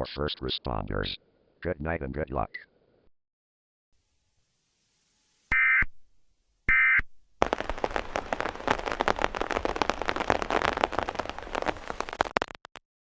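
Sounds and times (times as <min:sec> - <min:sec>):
dense crackling static: 0:07.4 - 0:12.8.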